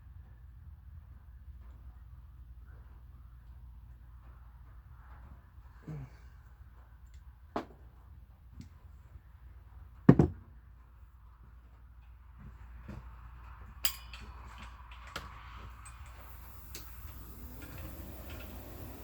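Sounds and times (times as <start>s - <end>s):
faint steady hiss: 13.8s - 19.0s.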